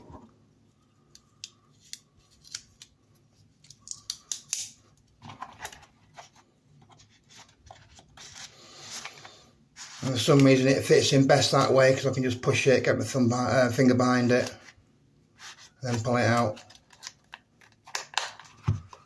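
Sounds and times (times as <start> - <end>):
rubbing sound: 9.8 - 10.2.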